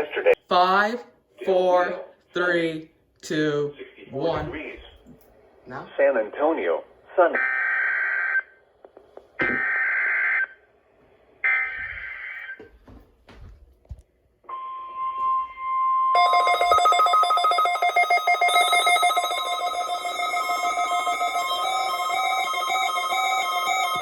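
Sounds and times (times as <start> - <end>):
steady single-pitch alert tone: 14.5 - 24.0.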